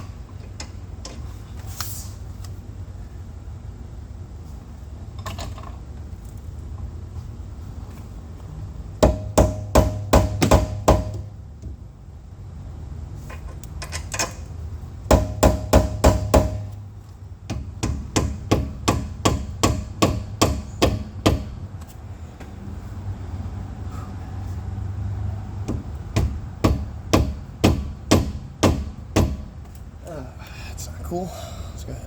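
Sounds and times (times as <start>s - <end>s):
hammer striking metal: 9.0s - 11.3s, 15.1s - 16.8s, 17.5s - 21.6s.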